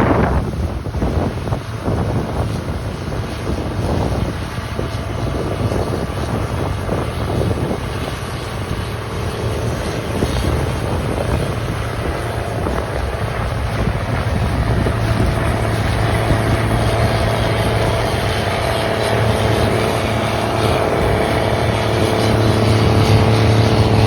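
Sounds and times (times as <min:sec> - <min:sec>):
machinery engine humming: 0:00.0 - 0:24.0
wind noise on microphone: 0:00.0 - 0:24.0.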